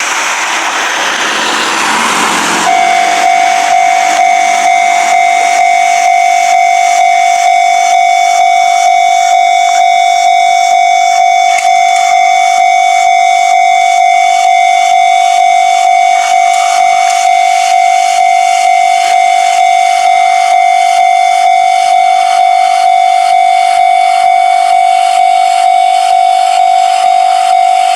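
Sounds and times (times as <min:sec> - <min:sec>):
loud rushing noise: 0:00.0 - 0:07.6
level crossing warning bell: 0:00.0 - 0:27.9.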